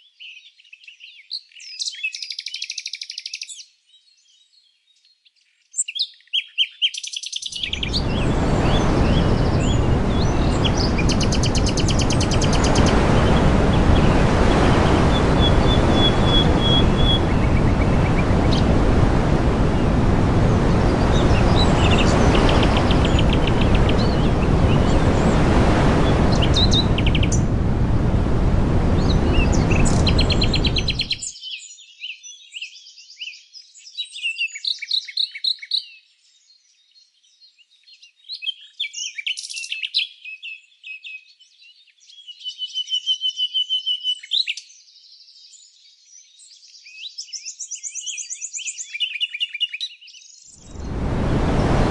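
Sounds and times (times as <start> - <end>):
small birds chirping and trilling: 0.0 - 18.8, 19.6 - 27.6, 28.9 - 51.0
loud steady rushing noise: 7.6 - 31.2, 50.6 - 51.9.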